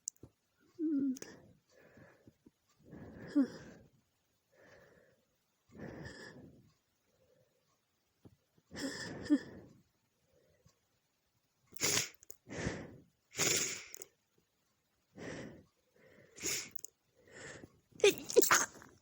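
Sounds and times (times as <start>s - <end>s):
woman sneezing: 18.0s - 18.8s.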